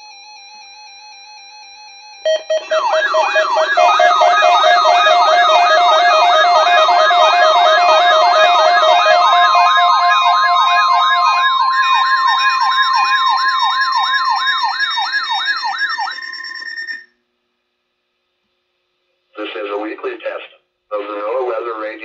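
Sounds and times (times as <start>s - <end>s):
electronic siren yelping: 2.1s - 17.1s
steady held tones: 2.3s - 17.1s.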